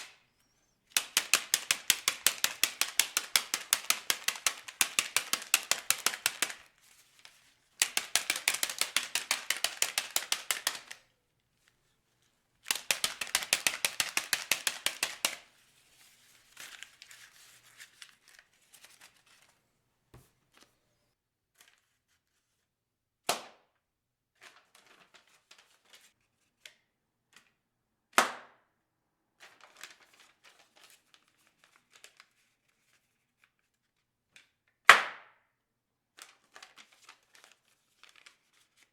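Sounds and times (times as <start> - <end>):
paper crinkling: 0.0 - 11.0, 11.6 - 19.6, 29.6 - 33.4, 36.3 - 38.9
paper swishing snaps: 1.0 - 11.0, 12.7 - 16.0.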